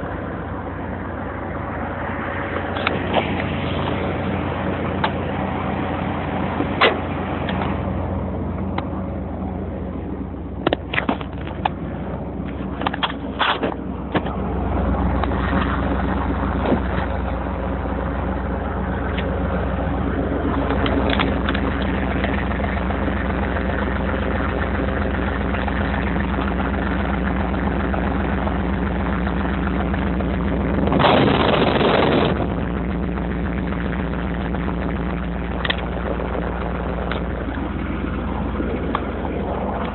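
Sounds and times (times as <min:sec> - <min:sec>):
truck engine starting and idling: 0:00.0 - 0:39.9
loud rush of noise: 0:30.0 - 0:39.9.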